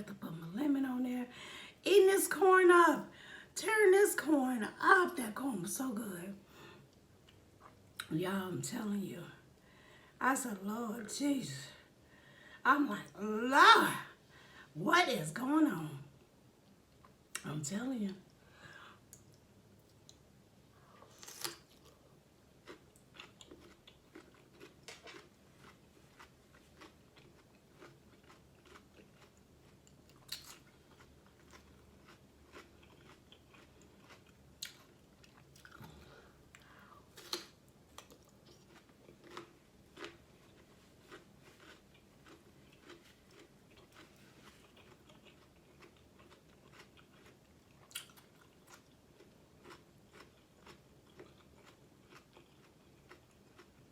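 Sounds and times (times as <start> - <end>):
person chewing and biting: 21.0 - 53.9.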